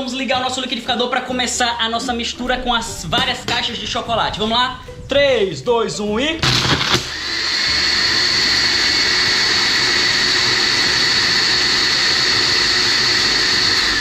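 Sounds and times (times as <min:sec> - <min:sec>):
blender motor whining: 0:06.4 - 0:14.0.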